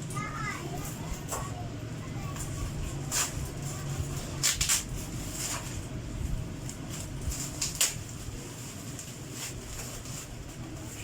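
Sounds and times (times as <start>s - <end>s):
low steady hum: 0.0s - 11.0s
parcel crackles and knocks: 2.3s - 11.0s.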